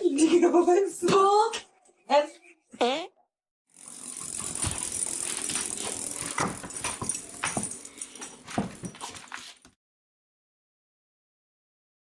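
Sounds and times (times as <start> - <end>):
rattling clattering noise: 3.8 - 9.7.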